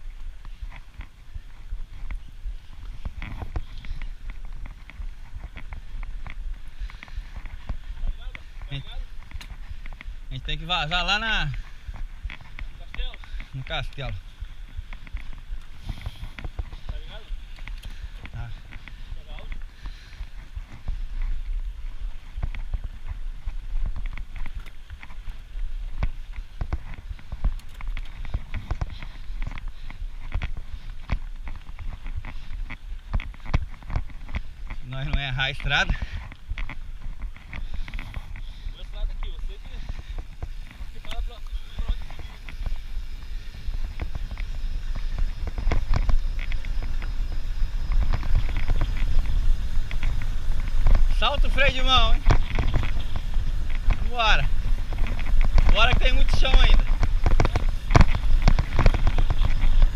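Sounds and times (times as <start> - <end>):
bicycle rattling on dirt track: 0.0 - 59.9
wind rumble on microphone: 0.0 - 59.9.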